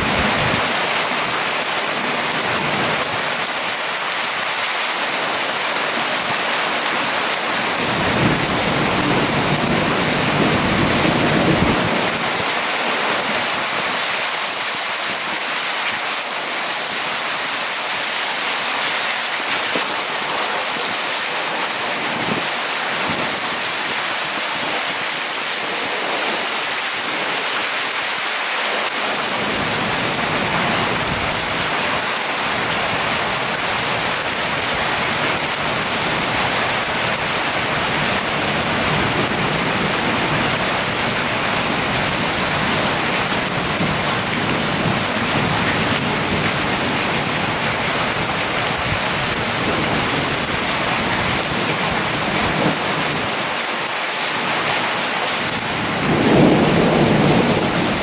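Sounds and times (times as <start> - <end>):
heavy rain falling: 0.0 - 58.0
low rumble of thunder: 55.7 - 58.0.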